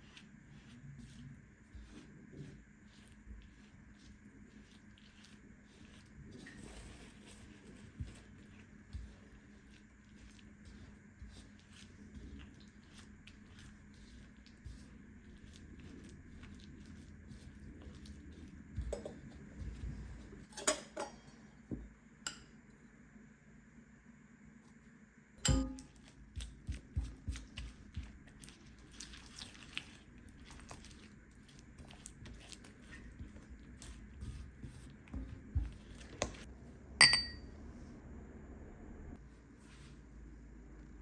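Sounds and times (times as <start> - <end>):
dishes and utensils clinking: 25.4 - 25.9, 37.0 - 37.4.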